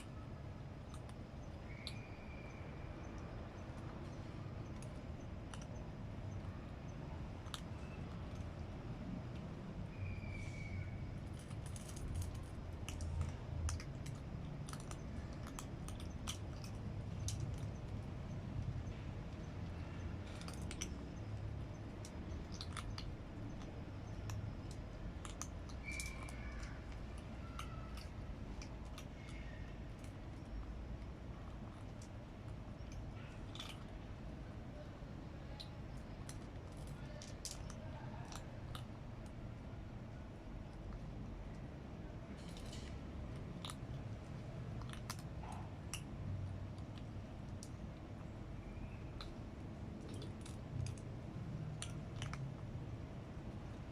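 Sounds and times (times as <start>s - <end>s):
low background rumble: 0.0s - 53.9s
cat crunching dry food: 11.2s - 18.6s, 19.3s - 34.3s, 35.6s - 39.4s, 42.3s - 48.4s, 49.1s - 52.8s.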